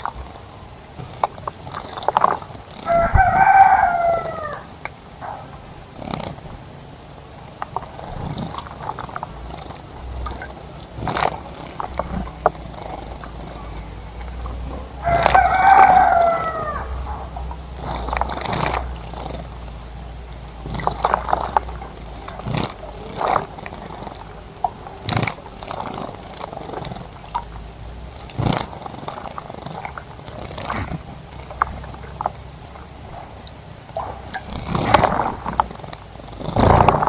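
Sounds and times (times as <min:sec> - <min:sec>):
rooster crowing: 0:02.8 - 0:04.8, 0:13.8 - 0:18.0.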